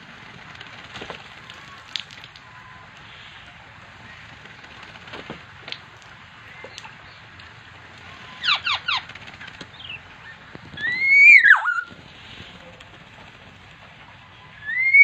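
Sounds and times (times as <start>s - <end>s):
steady background hiss: 0.0s - 15.0s
oriole calling: 1.2s - 15.0s
faint chirps and clicks: 5.7s - 13.0s.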